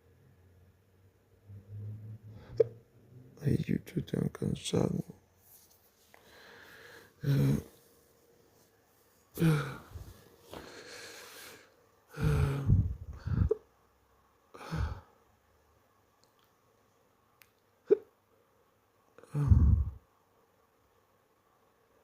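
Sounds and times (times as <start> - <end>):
breathy sighs: 6.3 - 7.7, 9.4 - 13.6, 14.5 - 15.1, 19.2 - 20.0
man hiccuping: 17.9 - 18.1.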